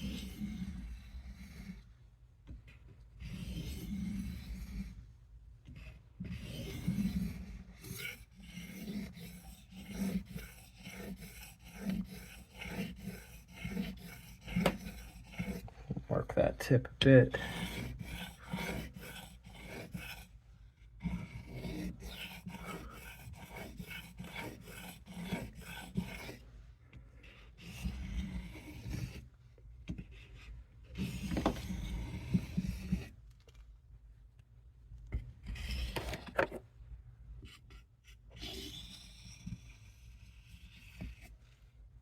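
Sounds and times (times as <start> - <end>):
knife scraping on sharpening stone: 7.9 - 15.6, 21.0 - 26.4.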